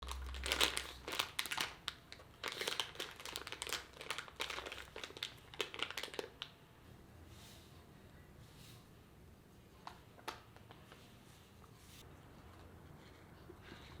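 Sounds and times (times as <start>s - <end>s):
crinkling and crackling: 0.0s - 6.6s.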